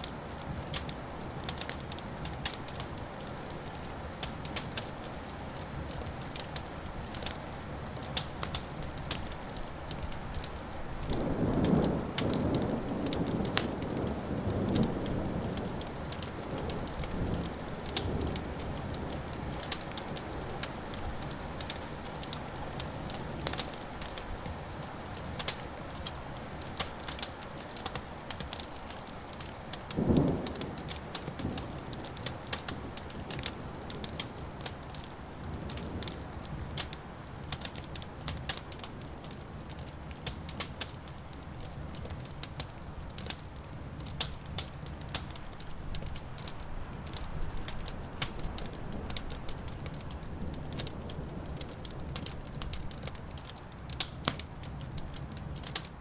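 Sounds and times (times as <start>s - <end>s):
wood fire crackling: 0.0s - 56.0s
low rolling thunder: 11.1s - 19.5s, 29.9s - 34.6s.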